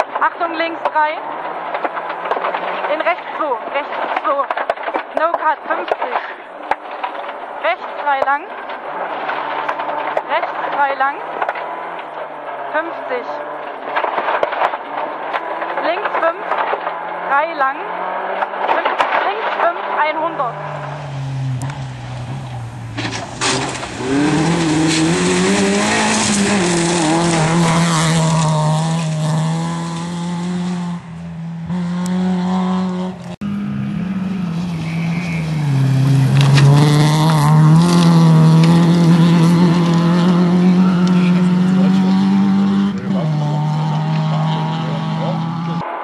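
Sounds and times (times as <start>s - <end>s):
road and tyre noise: 0.0s - 46.0s
rally car engine from inside: 13.3s - 46.0s.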